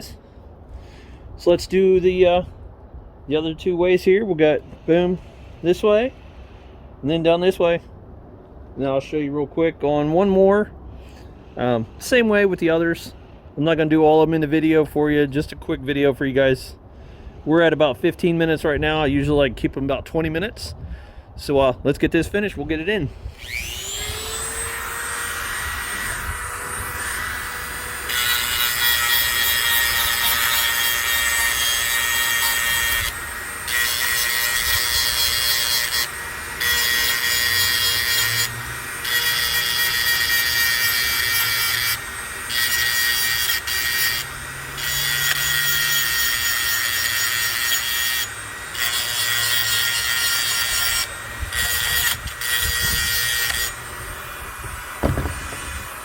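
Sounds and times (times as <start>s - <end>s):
motor whining: 23.1s - 28.0s, 51.4s - 56.0s.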